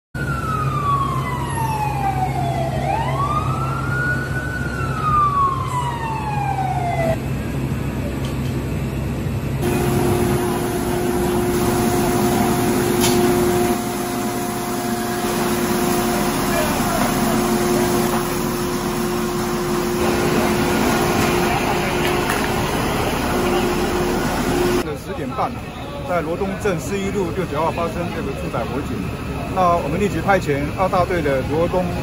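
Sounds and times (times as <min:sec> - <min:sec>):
fire engine siren wailing: 0:00.2 - 0:07.4, 0:09.6 - 0:32.0
low engine hum: 0:01.8 - 0:24.9
noisy drone with held tones: 0:09.6 - 0:24.8.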